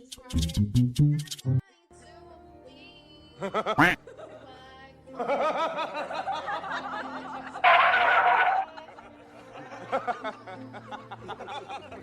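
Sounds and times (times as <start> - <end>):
person snickering laughter: 3.6 - 4.0.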